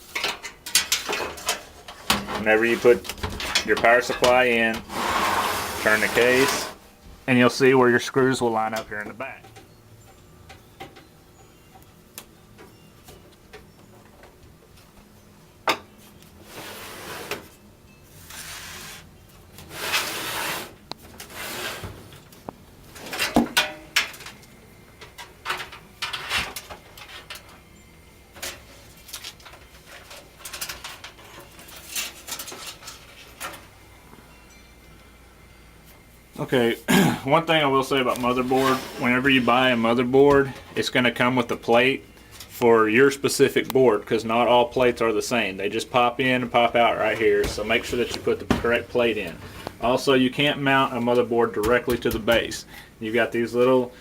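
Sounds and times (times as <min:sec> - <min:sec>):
parts scraping and rubbing: 0:00.0 - 0:06.8, 0:16.4 - 0:17.5, 0:18.1 - 0:22.1, 0:38.0 - 0:40.0.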